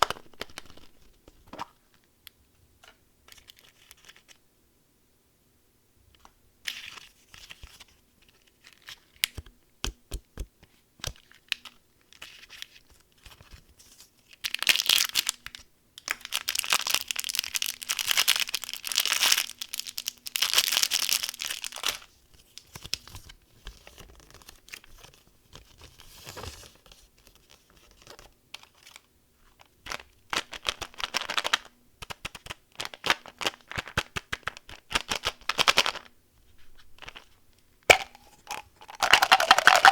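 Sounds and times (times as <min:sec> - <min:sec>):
candy wrapper crinkling and tearing: 0:00.0 - 0:01.1, 0:14.3 - 0:22.1, 0:27.8 - 0:36.1, 0:37.9 - 0:39.9.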